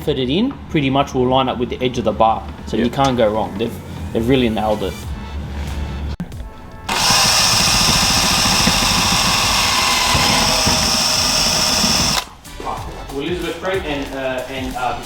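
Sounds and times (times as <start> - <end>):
power drill running: 6.6 - 12.3.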